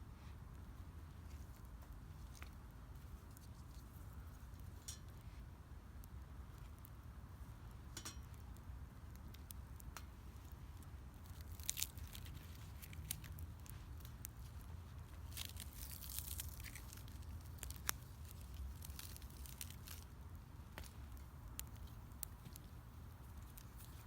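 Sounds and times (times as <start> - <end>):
low steady rumble: 0.0 - 24.0
wood fire crackling and popping: 15.2 - 20.1.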